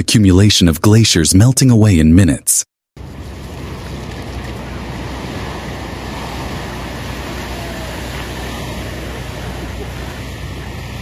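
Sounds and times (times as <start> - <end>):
meltwater rushing: 3.0 - 11.0.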